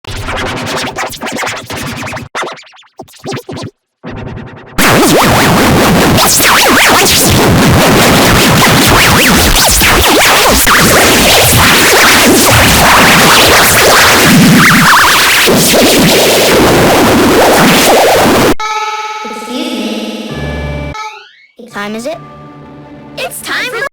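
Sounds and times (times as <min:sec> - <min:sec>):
overlapping sound effects and music: 0:00.0 - 0:18.6.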